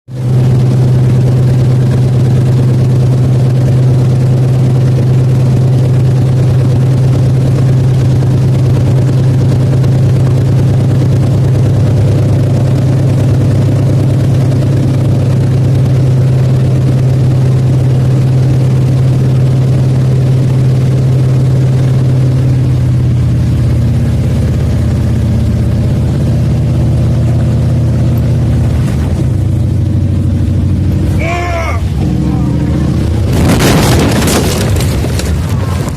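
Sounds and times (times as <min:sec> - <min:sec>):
radial engine droning: 0:24.3 - 0:35.9.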